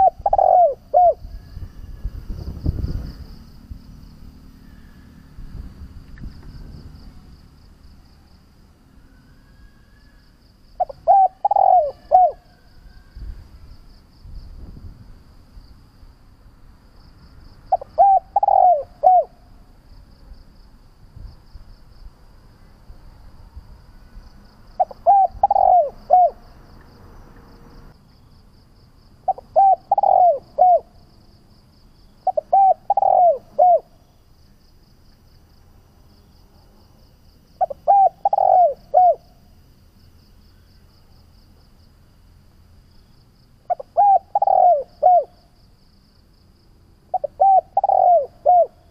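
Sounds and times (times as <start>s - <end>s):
dove cooing: 0.0s - 1.6s, 10.8s - 13.1s, 17.7s - 19.4s, 24.8s - 26.4s, 29.3s - 31.0s, 32.2s - 34.0s, 37.6s - 39.3s, 43.7s - 45.4s, 47.1s - 48.9s.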